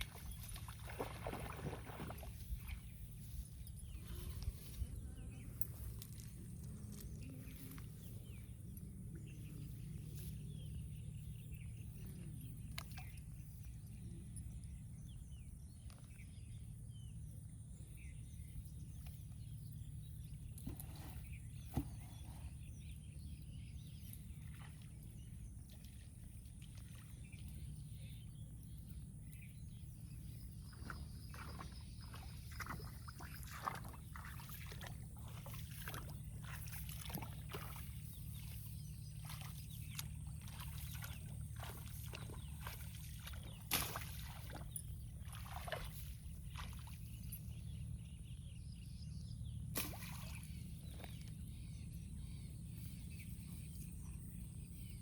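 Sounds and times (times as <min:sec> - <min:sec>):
water sloshing and splashing: 0:00.0 - 0:08.8, 0:20.4 - 0:22.6, 0:23.2 - 0:47.8, 0:49.6 - 0:51.7
steady low rumble: 0:00.0 - 0:55.0.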